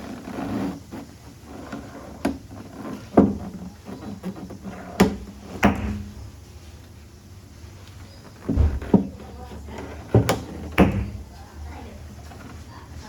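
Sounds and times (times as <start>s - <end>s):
sharp knocks on car door panel: 5.0s - 6.2s, 8.5s - 9.1s.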